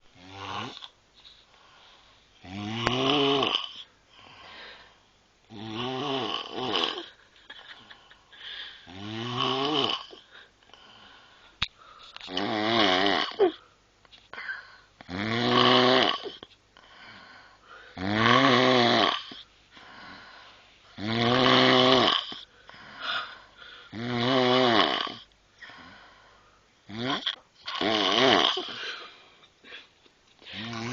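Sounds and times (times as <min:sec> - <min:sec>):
quiet breaths: 0:00.0 - 0:12.4, 0:13.2 - 0:15.2, 0:16.2 - 0:18.2, 0:19.1 - 0:24.2, 0:24.8 - 0:30.9
woman snoring loudly: 0:00.2 - 0:00.9, 0:02.4 - 0:03.9, 0:05.5 - 0:07.2, 0:08.8 - 0:10.3, 0:12.3 - 0:13.6, 0:15.0 - 0:16.4, 0:18.0 - 0:19.4, 0:21.0 - 0:22.4, 0:23.9 - 0:26.0, 0:26.9 - 0:29.0, 0:30.5 - 0:30.9.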